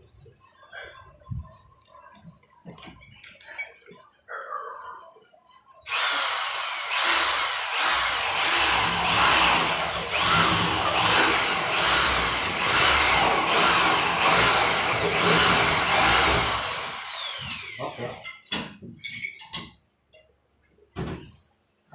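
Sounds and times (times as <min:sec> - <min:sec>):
power tool motor whining: 0:05.9 - 0:18.2.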